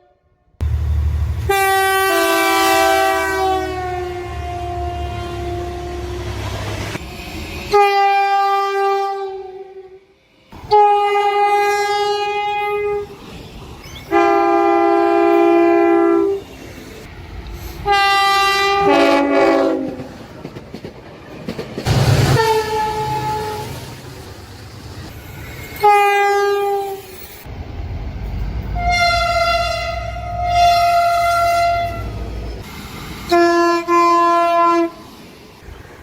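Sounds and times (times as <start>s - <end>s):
low rumble of passing train: 0.0s - 36.0s
train air horn blasts: 1.4s - 6.9s, 7.7s - 13.1s, 14.1s - 16.4s, 17.8s - 20.1s, 21.9s - 24.0s, 25.8s - 27.1s, 28.8s - 32.2s, 33.2s - 35.1s.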